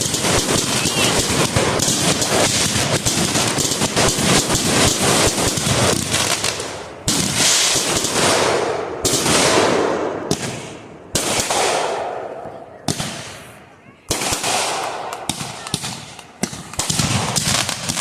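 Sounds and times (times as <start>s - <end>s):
firework bangs with hiss: 0.0s - 18.0s.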